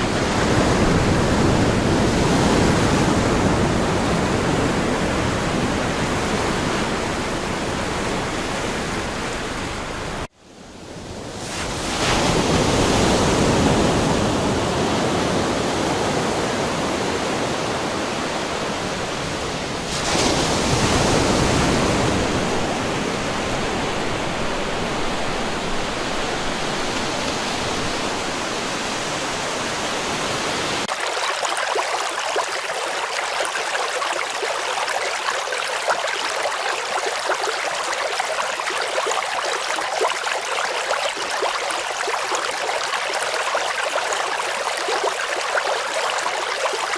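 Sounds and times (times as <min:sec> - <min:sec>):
water rushing: 0:00.0 - 0:10.3, 0:11.4 - 0:46.9
small stream babbling: 0:13.7 - 0:46.9.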